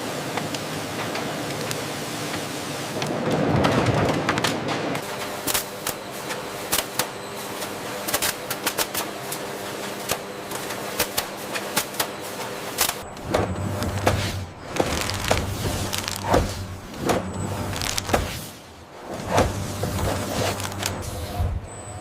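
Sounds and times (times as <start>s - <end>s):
steady mechanical hum: 0.0s - 22.0s
machinery clicks and knocks: 12.8s - 18.4s.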